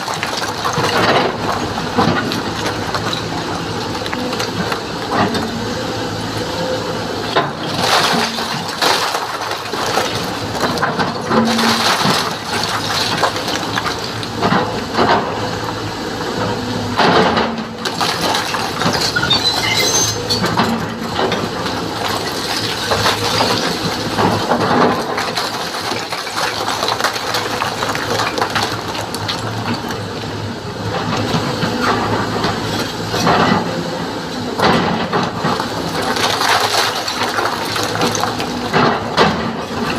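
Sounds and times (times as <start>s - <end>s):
excavator diesel engine running: 0.0s - 39.9s
rocks clattering and scraping: 7.6s - 15.2s, 17.1s - 29.9s, 35.2s - 39.9s.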